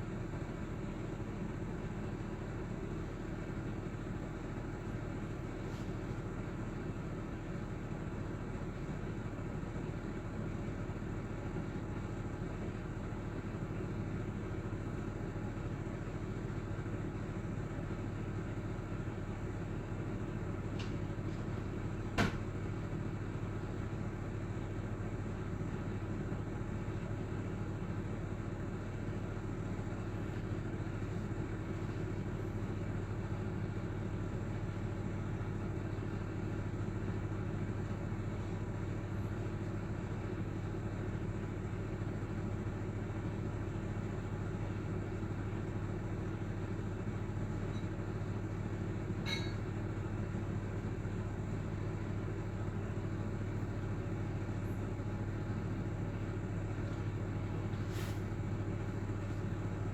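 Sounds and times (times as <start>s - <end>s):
oven convection fan humming: 0.0s - 59.9s.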